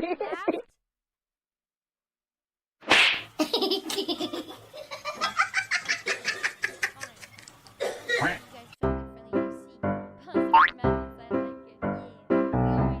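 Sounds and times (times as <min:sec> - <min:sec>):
rapid pulsing laughter: 0:03.4 - 0:07.5.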